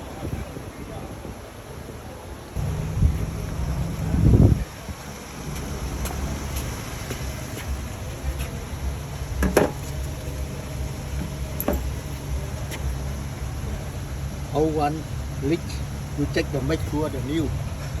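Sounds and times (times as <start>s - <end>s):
steady low rumble: 2.6s - 18.0s.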